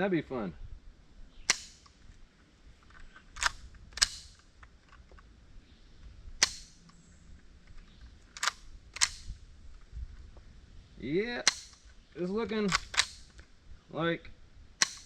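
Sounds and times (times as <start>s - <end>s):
rifle firing pin clicks: 1.4s - 2.0s, 2.8s - 5.1s, 6.4s - 6.9s, 7.7s - 9.4s, 11.4s - 12.0s, 12.6s - 13.4s, 14.8s - 15.0s.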